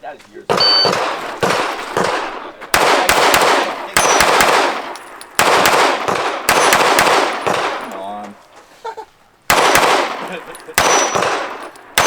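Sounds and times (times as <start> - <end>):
steel targets ringing: 0.5 - 2.4, 3.6 - 5.4, 10.2 - 12.0
pistol shots: 0.5 - 8.2, 9.5 - 12.0.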